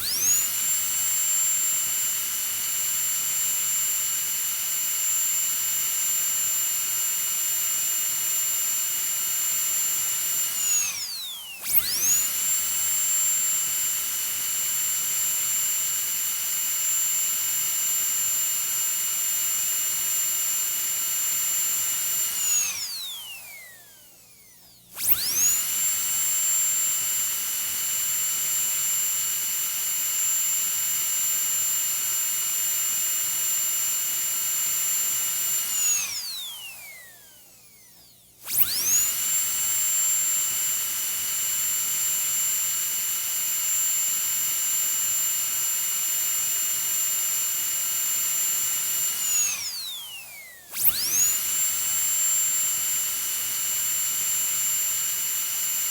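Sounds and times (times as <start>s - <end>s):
dentist's drill whining: 0.0s - 55.9s.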